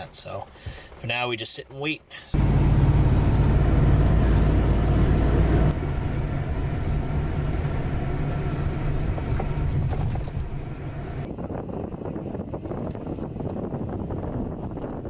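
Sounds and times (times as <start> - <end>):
road noise: 2.3 - 11.4
vehicle engine running: 2.4 - 11.3.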